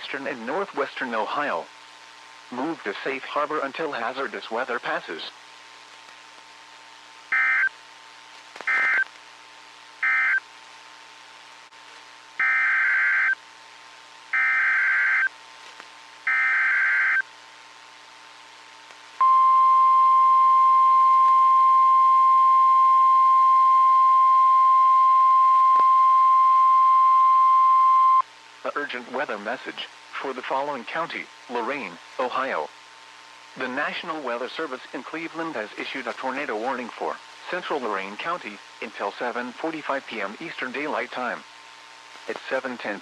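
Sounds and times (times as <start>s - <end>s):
screechy data bursts: 7.3s - 7.7s, 8.7s - 9.1s, 10.0s - 10.4s, 12.4s - 13.4s, 14.4s - 15.3s, 16.3s - 17.2s
steady single-pitch alarm tone: 7.3s - 7.7s, 8.7s - 9.1s, 10.0s - 10.4s, 12.4s - 13.4s, 14.3s - 15.3s, 16.3s - 17.2s, 19.2s - 28.2s.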